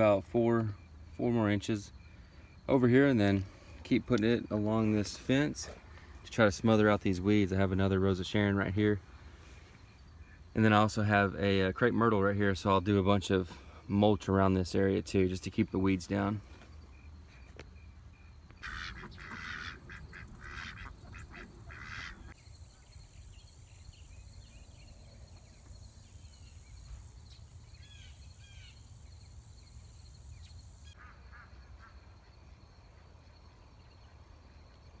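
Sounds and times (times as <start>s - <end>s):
steady high-pitched hiss: 0.0s - 17.3s, 17.9s - 35.0s
farmyard fowl calling: 18.6s - 22.4s
small bird chirps: 18.6s - 31.0s.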